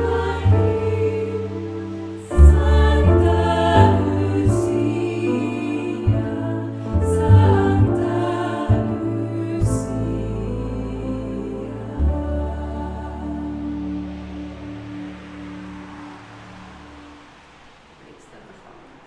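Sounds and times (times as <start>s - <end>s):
women singing in harmony: 0.0s - 14.7s
piano accompaniment: 0.0s - 17.7s.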